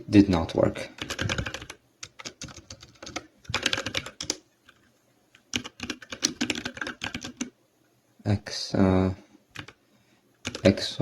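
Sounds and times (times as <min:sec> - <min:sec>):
typing on computer keyboard: 0:01.0 - 0:07.5, 0:09.5 - 0:09.8, 0:10.4 - 0:10.8.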